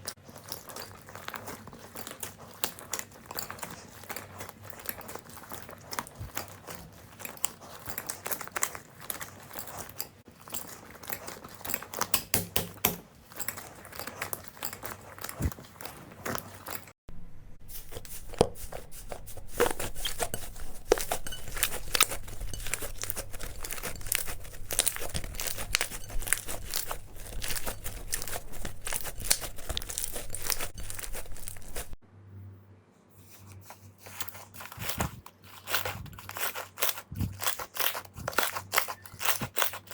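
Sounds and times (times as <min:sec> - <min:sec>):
slime crackling and popping: 0:21.5 - 0:31.7.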